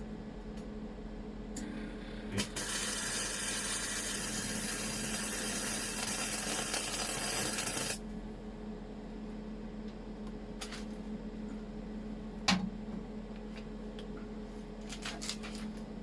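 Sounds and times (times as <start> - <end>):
welder electrical hum: 0.0 - 16.0
welding arc crackling and hissing: 2.3 - 8.0
welding arc striking crack: 2.4 - 8.0.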